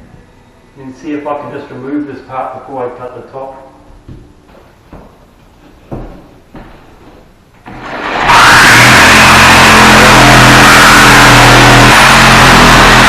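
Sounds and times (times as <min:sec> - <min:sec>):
power saw cutting steel: 0:07.7 - 0:13.0.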